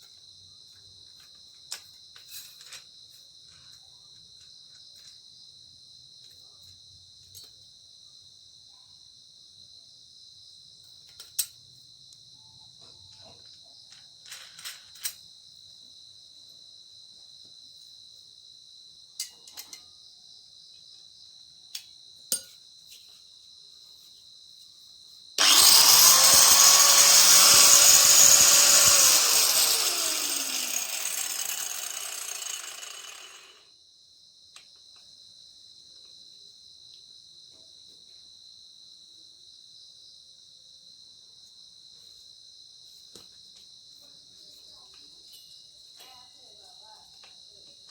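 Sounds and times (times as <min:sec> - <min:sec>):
angle grinder whining: 0:25.4 - 0:33.6.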